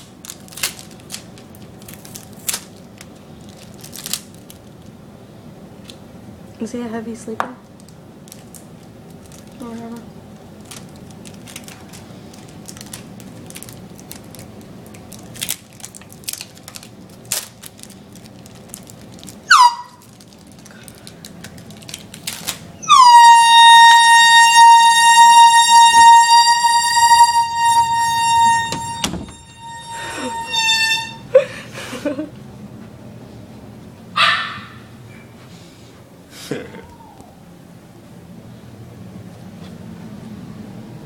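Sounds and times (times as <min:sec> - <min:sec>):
air horn blaring: 0:22.8 - 0:31.4.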